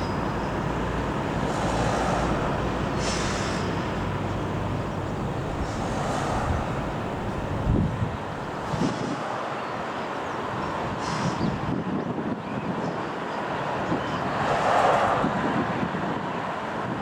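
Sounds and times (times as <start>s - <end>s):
jet engines roaring: 0.0s - 9.6s
wind thump on microphone: 5.5s - 9.2s.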